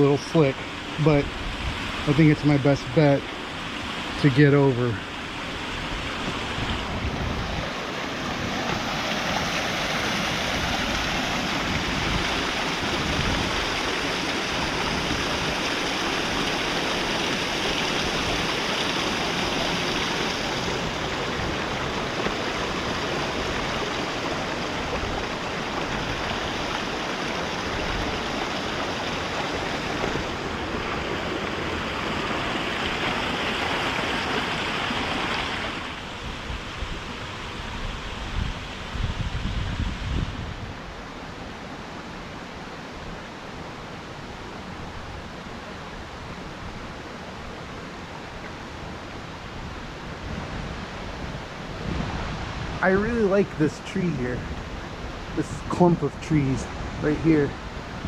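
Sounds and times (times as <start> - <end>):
water rushing over stones: 0.0 - 38.9.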